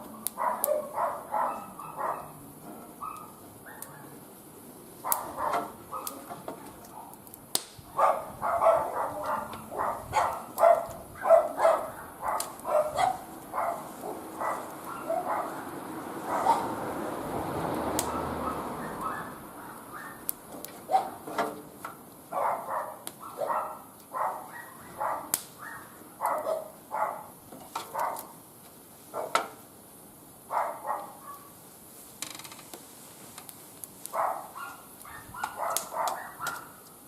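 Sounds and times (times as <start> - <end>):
wood fire crackling: 0.0 - 37.0
dog barking: 0.3 - 2.4, 3.0 - 4.2, 5.0 - 6.2, 6.9 - 7.2, 7.9 - 16.8, 18.1 - 20.3, 20.9 - 21.2, 22.3 - 27.3, 27.9 - 28.3, 29.1 - 29.5, 30.5 - 31.5, 34.1 - 36.8.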